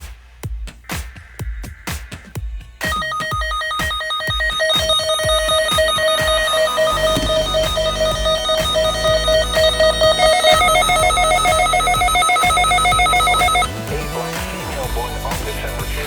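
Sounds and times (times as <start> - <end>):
rapid electronic beeping: 2.8 - 15.2.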